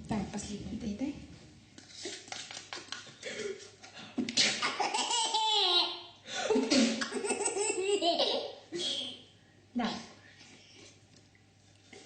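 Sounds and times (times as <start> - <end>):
baby laughing hard: 4.6 - 6.0, 6.6 - 8.6.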